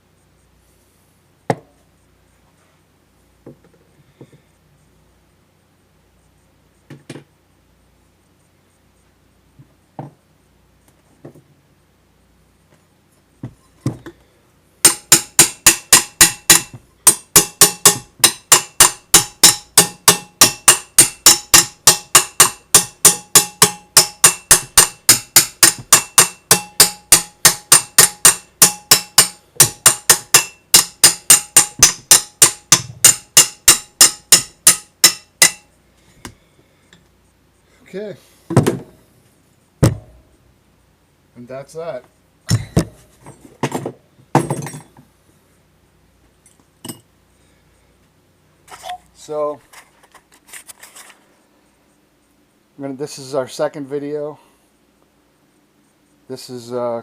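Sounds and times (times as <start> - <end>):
hammer striking metal: 14.8 - 35.7.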